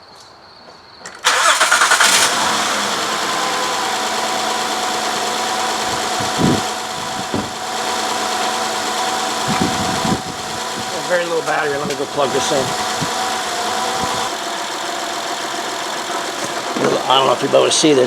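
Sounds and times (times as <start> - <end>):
car engine cranking: 1.1 - 18.0
car engine idling with misfire: 1.2 - 18.0.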